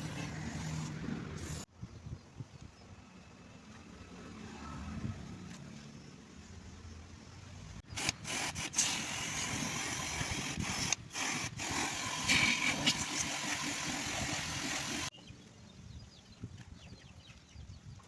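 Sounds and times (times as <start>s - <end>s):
pressure washer spraying: 7.9s - 15.1s.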